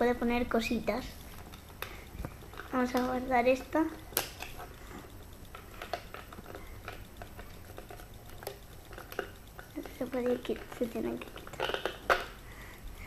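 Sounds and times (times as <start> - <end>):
plastic toy pieces clicking: 5.4 - 12.5.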